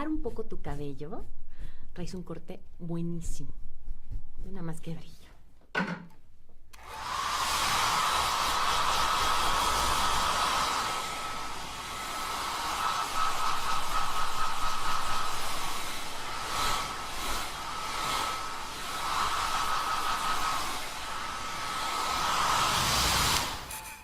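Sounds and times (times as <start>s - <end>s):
hair dryer blowing: 6.8s - 23.9s.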